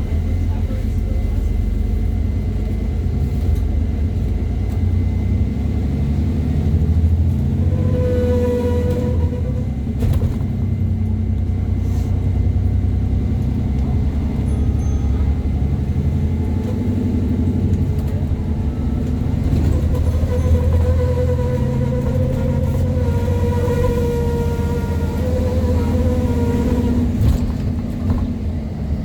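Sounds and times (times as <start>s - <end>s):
bus engine pulling under load: 0.0s - 29.0s
high-pitched squeal: 7.5s - 9.8s, 18.5s - 27.5s.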